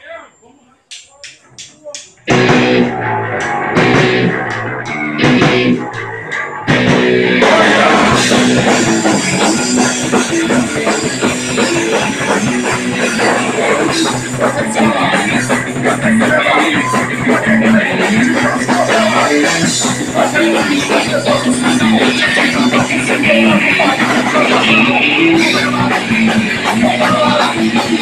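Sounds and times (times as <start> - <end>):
punk rock band playing: 2.1 - 28.0
guitar riff in stop-start hits: 2.3 - 7.5.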